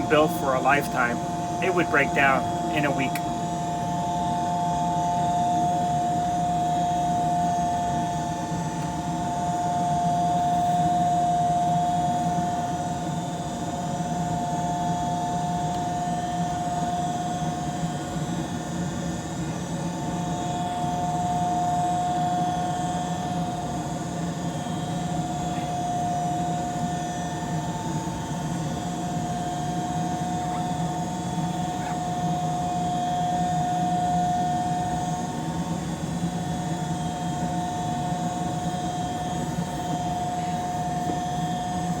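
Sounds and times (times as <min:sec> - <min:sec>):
steady high whine: 0:00.0 - 0:08.8.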